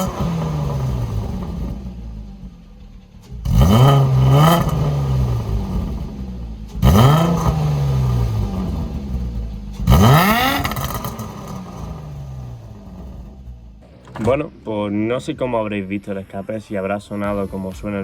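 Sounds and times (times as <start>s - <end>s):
car engine revving: 0.0s - 14.5s.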